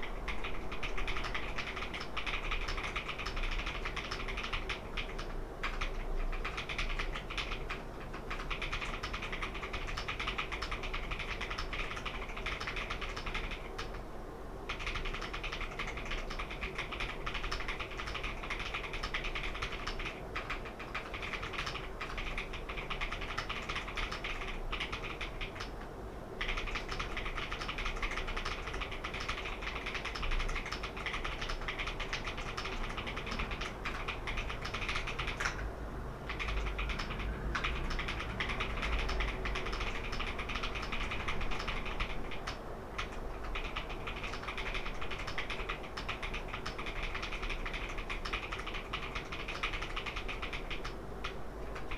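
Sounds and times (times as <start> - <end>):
mechanical keyboard key clicks: 0.3 - 14.0, 26.4 - 35.6, 36.3 - 51.9.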